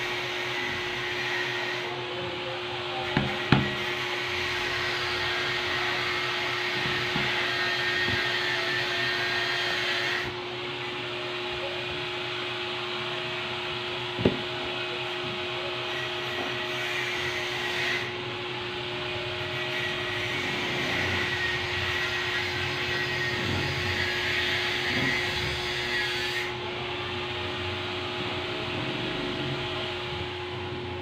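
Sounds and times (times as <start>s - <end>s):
machine motor humming: 0.0s - 22.1s
sharp knocks: 3.2s - 3.8s.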